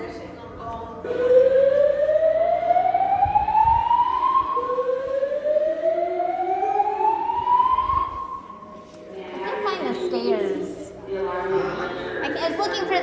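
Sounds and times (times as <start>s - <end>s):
slow-whoop fire alarm tone: 1.0s - 8.8s.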